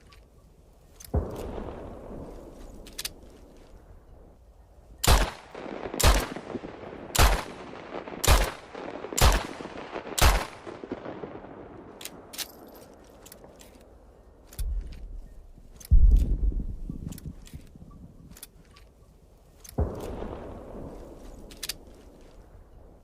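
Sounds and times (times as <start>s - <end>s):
light clicks: 2.6s - 3.8s.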